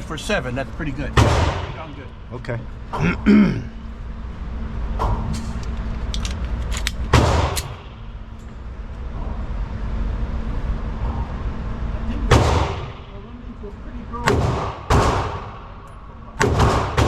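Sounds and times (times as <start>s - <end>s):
steady low hum: 0.0s - 17.0s
gunshots with echo: 14.3s - 15.6s, 16.4s - 17.0s.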